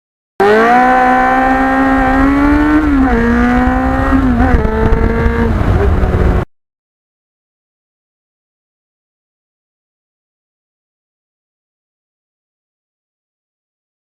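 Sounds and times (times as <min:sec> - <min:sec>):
high-revving vehicle engine: 0:00.4 - 0:06.5.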